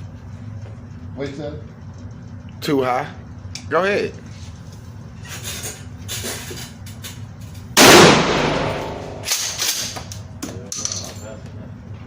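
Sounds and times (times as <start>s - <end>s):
loud gunshot with echo: 7.8s - 9.3s.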